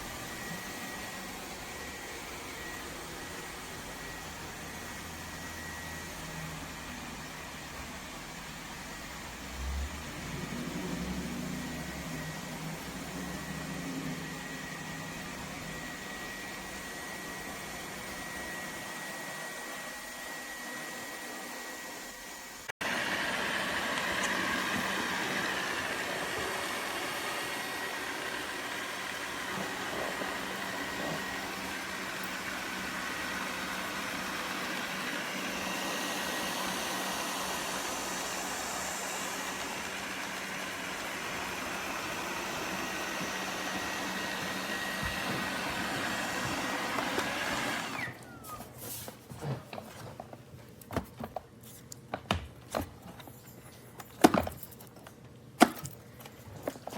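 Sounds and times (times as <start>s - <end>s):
robot vacuum running: 0.0s - 48.8s.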